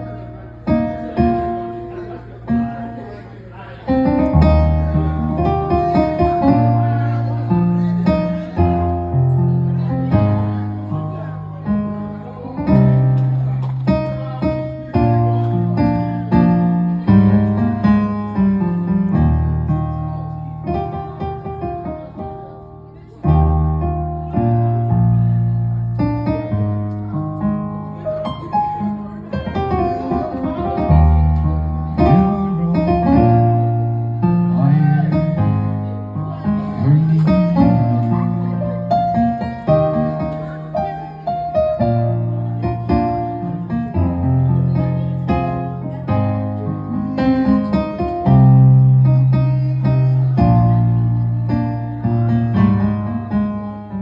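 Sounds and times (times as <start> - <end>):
keyboard chords: 0.0 - 54.0
deep bass notes: 4.0 - 10.8, 30.8 - 40.4, 48.1 - 53.6.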